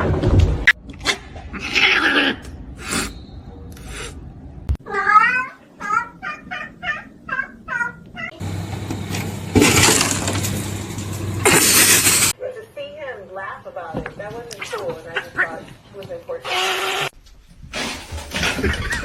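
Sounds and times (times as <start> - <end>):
cat meowing: 4.8 - 8.3.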